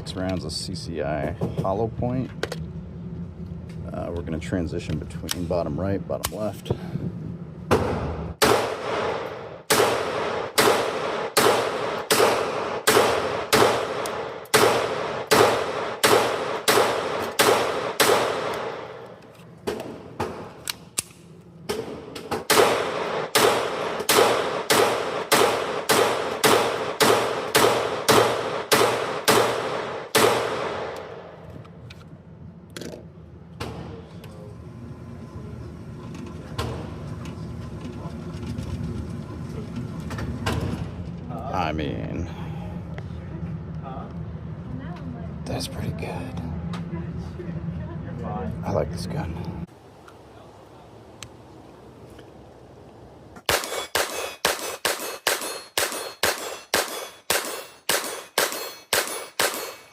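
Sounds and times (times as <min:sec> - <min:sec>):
pistol shots with ringing tail: 0:07.8 - 0:19.0, 0:21.7 - 0:31.3, 0:53.5 - 0:59.9.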